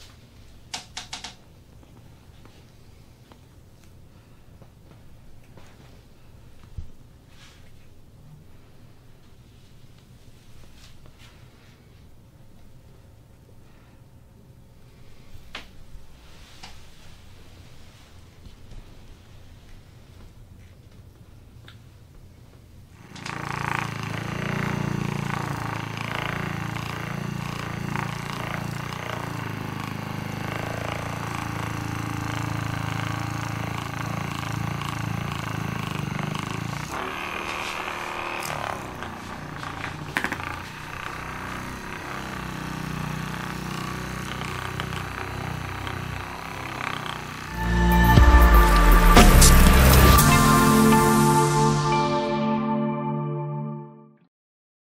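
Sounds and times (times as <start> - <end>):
electric massager buzzing: 23.0 - 51.5.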